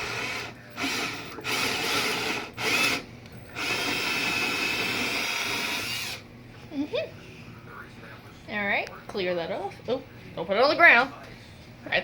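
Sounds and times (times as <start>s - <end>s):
electric drill boring a hole: 0.0s - 3.0s, 3.6s - 6.2s.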